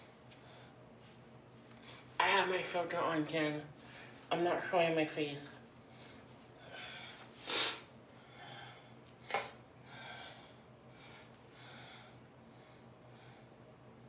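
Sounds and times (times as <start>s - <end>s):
person breathing softly: 9.8s - 13.6s.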